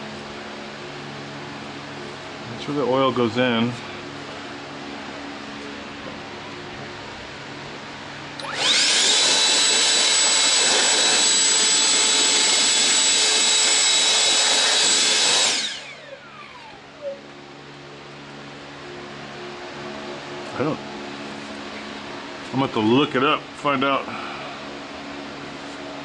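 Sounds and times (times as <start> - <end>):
power tool motor whining: 8.4 - 17.2.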